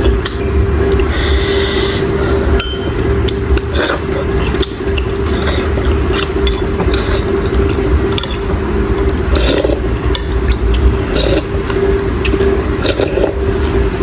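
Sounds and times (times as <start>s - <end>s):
steady low hum: 0.0s - 14.0s
chewing: 2.9s - 13.8s.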